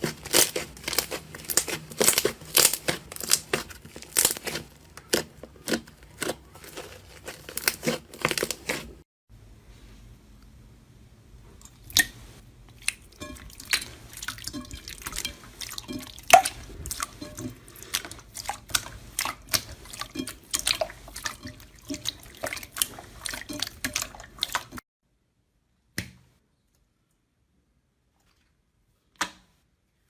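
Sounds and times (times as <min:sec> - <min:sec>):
slime squished by hand: 0:00.0 - 0:09.0.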